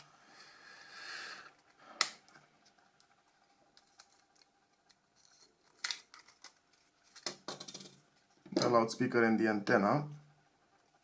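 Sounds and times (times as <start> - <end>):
plastic phone parts clicking: 3.8 - 8.0.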